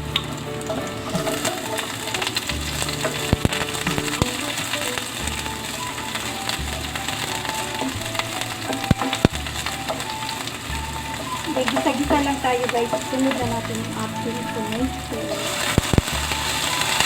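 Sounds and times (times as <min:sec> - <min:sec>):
background music: 0:00.0 - 0:17.0
garlic sizzling in oil: 0:00.0 - 0:17.0
utensil clicking against pan: 0:00.1 - 0:17.0.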